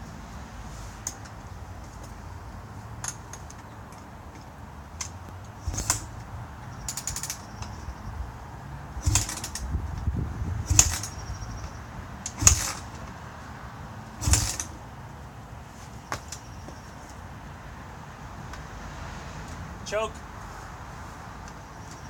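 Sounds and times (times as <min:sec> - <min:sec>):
mechanical clicks and knocks: 0:05.0 - 0:06.2, 0:06.8 - 0:07.8, 0:09.0 - 0:09.8, 0:10.7 - 0:11.3, 0:14.2 - 0:14.8
ratcheting ticks: 0:05.0 - 0:06.2, 0:06.8 - 0:07.8, 0:09.0 - 0:09.8, 0:10.7 - 0:12.8, 0:14.2 - 0:14.7.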